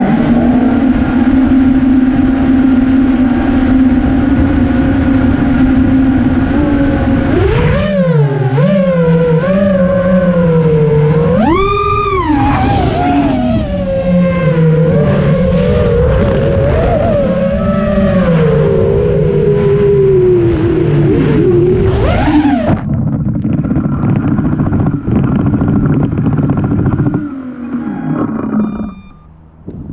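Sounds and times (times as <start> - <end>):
drone motors humming: 0.0 - 29.9
low rumble: 10.0 - 29.9
rough rattling buzz: 21.8 - 29.7
thin steady high tone: 22.9 - 29.3.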